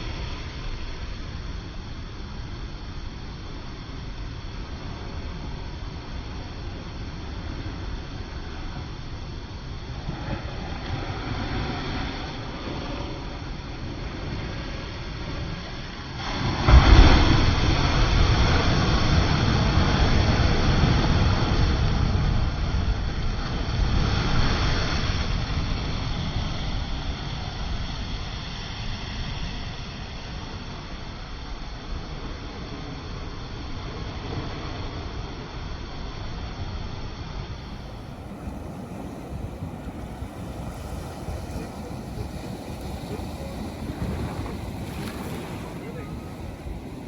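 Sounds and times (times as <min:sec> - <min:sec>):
wind rumbling on microphone: 0:37.4 - 0:47.0
sea waves breaking: 0:37.6 - 0:47.0.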